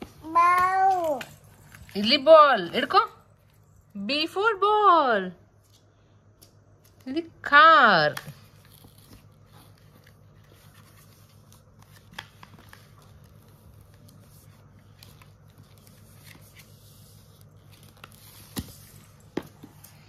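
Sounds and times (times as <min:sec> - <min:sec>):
low room hum: 0:00.0 - 0:20.0
pages turning: 0:08.2 - 0:20.0.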